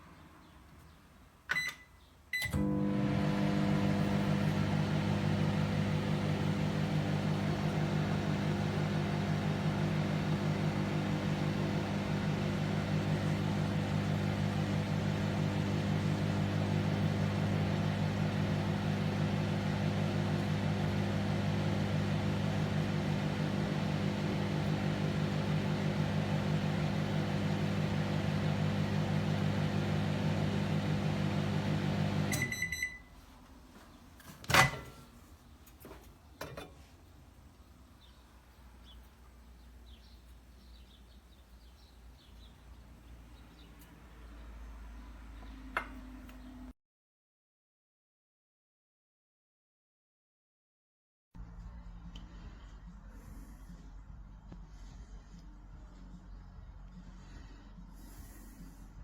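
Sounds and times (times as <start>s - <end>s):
microwave oven humming: 2.4s - 33.1s.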